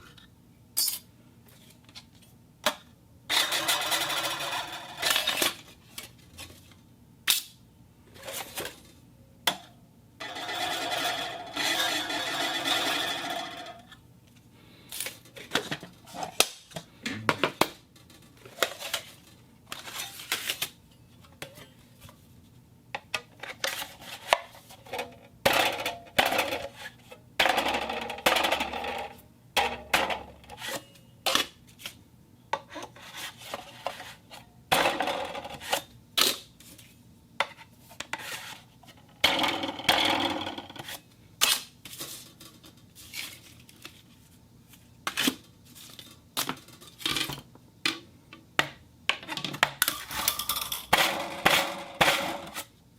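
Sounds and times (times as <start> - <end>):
scraping and rubbing on wood: 37.4 - 39.0.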